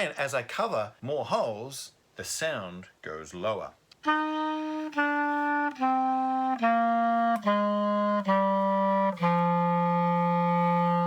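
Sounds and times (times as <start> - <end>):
clarinet playing descending notes: 4.0 - 11.0.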